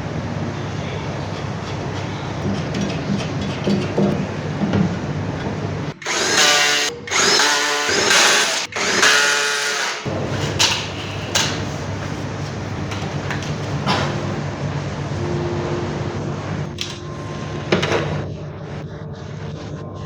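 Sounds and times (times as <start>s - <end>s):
power drill motor whine: 6.0s - 11.6s.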